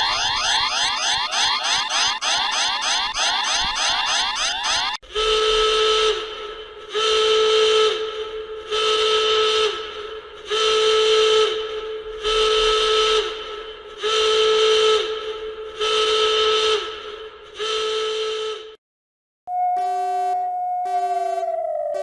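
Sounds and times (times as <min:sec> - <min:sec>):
alert alarm tone: 0:00.0 - 0:05.0.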